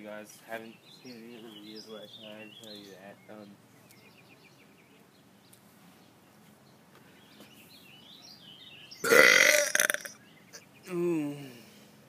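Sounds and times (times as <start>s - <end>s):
man burping loudly: 9.0s - 10.2s.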